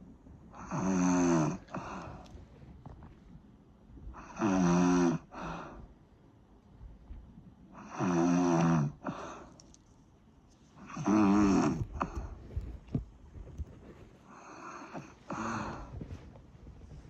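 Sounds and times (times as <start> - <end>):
loud snoring: 0.6 - 1.9, 4.2 - 5.3, 7.8 - 9.1, 10.9 - 12.3.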